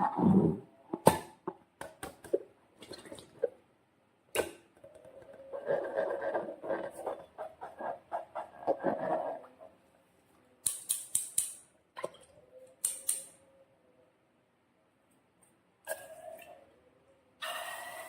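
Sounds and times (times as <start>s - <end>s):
sharp clicks: 12.8s - 13.4s.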